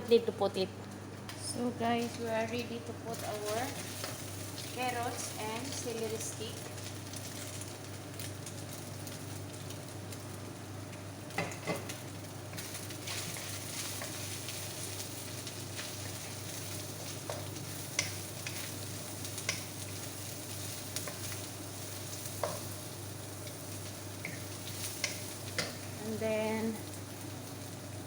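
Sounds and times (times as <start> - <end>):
food sizzling in a pan: 1.0 - 28.0
utensil clicking against pan: 17.2 - 18.7, 19.4 - 19.7, 24.2 - 25.9.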